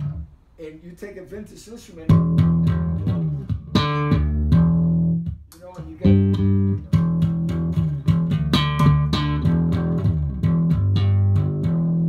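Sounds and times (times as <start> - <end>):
overdriven electric bass plucked notes: 2.1 - 5.4, 6.0 - 12.0.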